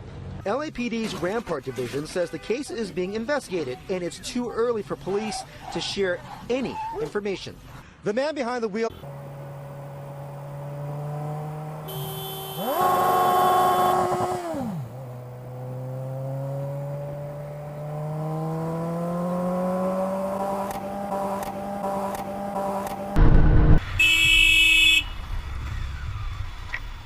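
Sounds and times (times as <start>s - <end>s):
vehicle engine revving: 8.9s - 24.0s.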